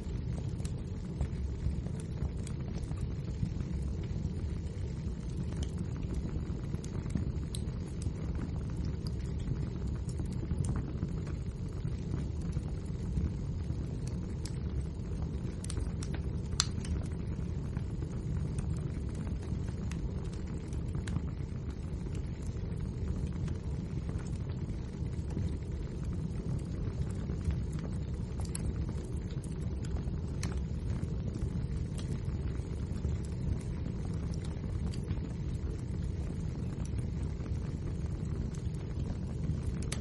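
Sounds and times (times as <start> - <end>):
logs crackling and popping: 0.0 - 40.0
low roar of flames: 0.0 - 40.0.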